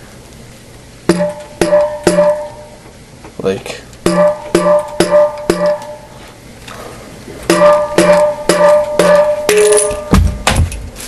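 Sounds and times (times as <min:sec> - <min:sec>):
mallet tapping with ringing tone: 0:01.1 - 0:02.8, 0:04.0 - 0:06.0, 0:07.5 - 0:10.2.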